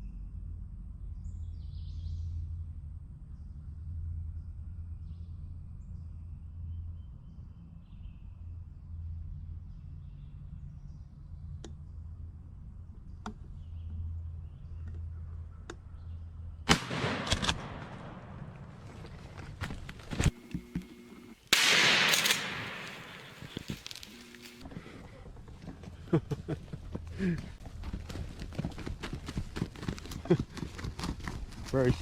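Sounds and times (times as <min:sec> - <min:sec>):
sharp clicks: 0:20.2 - 0:24.6.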